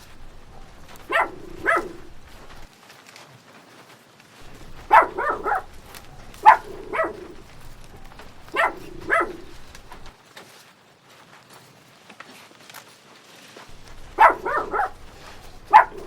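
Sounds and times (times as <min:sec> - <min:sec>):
dog barking: 0:00.0 - 0:02.7, 0:04.4 - 0:10.1, 0:13.7 - 0:16.0.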